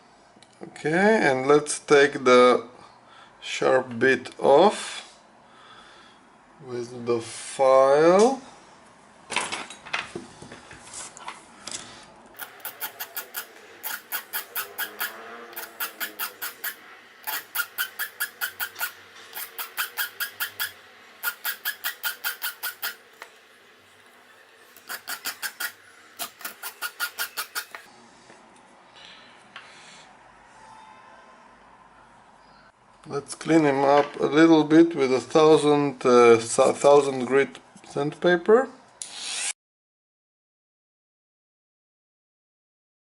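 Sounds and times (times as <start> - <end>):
file scraping metal: 12.4 - 23.2, 24.3 - 27.9.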